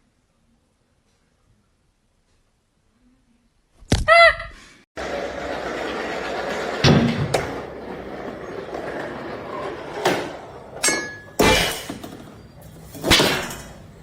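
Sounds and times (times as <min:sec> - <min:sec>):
knocks and clatters: 0:05.0 - 0:13.9.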